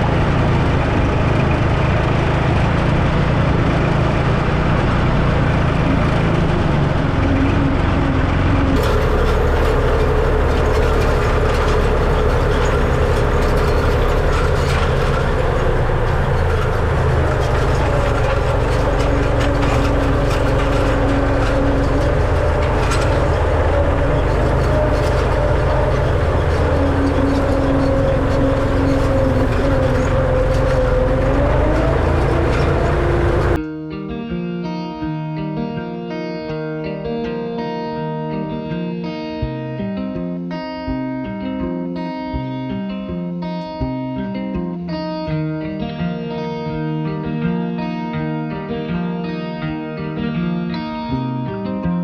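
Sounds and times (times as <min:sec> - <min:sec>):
high steady whine: 0:00.0 - 0:33.6
machinery clatter: 0:00.0 - 0:33.6
tractor engine running: 0:00.0 - 0:33.6.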